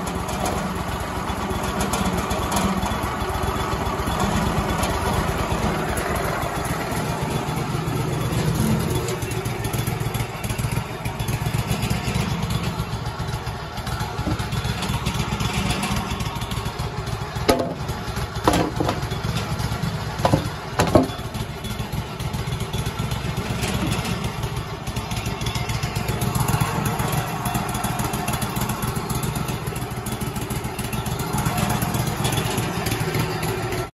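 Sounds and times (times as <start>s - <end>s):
sawmill engine running: 0.0s - 33.9s
sharp knocks: 17.5s - 19.1s, 20.2s - 21.2s.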